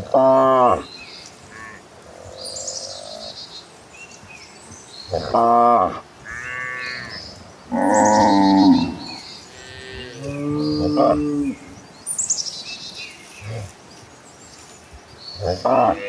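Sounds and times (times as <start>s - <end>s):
birds chirping: 0.0s - 16.0s
cattle mooing: 5.1s - 11.7s.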